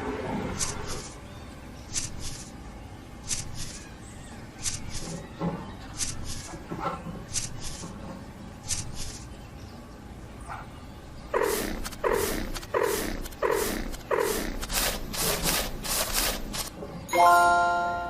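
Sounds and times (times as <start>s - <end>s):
rhythmic scraping strokes: 0.4s - 1.2s, 1.9s - 2.6s, 11.3s - 16.7s.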